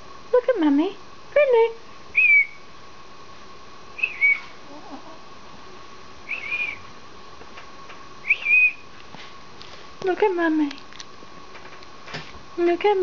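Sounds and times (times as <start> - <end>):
pet whistling snore: 4.0 - 4.5, 6.3 - 6.8.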